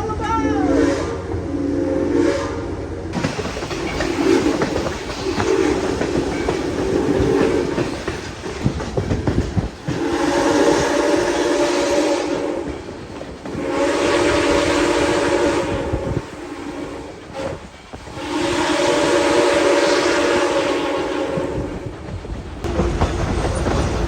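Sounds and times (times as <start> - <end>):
steam whistle chord blasts: 0.7 - 2.7, 13.6 - 21.7
train clattering and knocking: 2.9 - 12.0, 12.6 - 14.8, 21.2 - 24.0.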